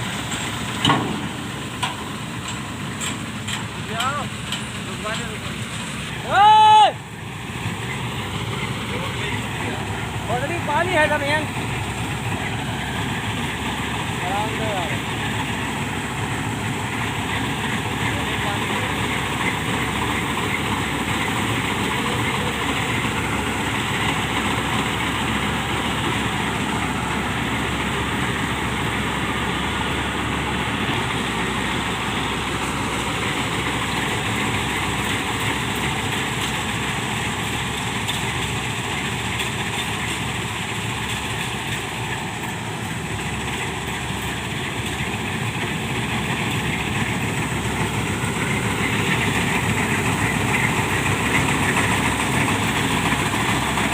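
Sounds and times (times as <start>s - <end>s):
diesel engine running: 0.0s - 53.9s.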